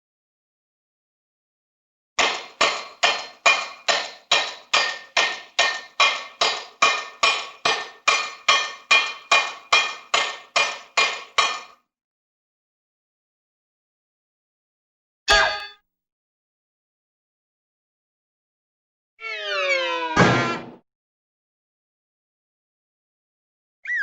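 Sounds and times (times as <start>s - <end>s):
hammer strikes with metallic ring: 2.2s - 11.8s, 15.3s - 15.8s.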